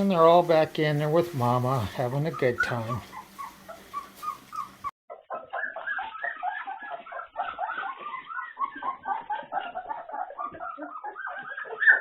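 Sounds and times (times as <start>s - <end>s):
puppies whimpering and squeaking: 1.1s - 12.0s.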